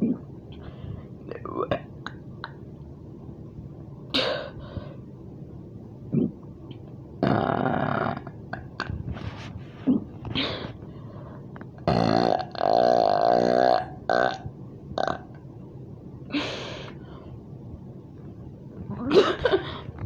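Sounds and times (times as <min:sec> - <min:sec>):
person burping: 0:06.1 - 0:06.4, 0:11.8 - 0:14.4.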